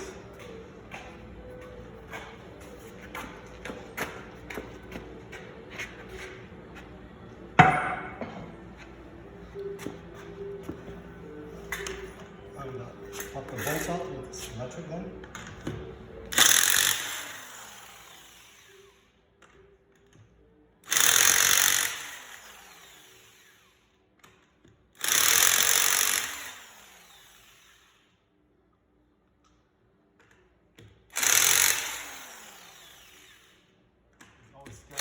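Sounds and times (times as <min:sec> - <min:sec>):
impact wrench bursts: 0:16.3 - 0:19.0, 0:20.9 - 0:23.7, 0:25.0 - 0:28.1, 0:31.1 - 0:33.7.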